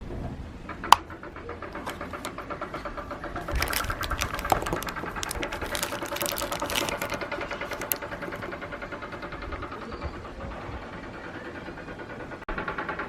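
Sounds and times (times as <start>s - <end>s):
mechanical clicking and rattling: 0.6s - 9.2s.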